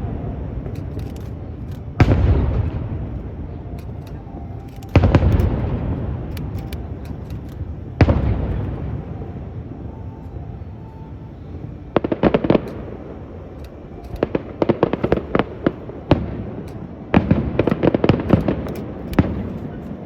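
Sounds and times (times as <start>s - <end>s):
firework booms with rolling echo: 2.0s - 3.1s, 8.0s - 8.7s, 14.3s - 19.5s.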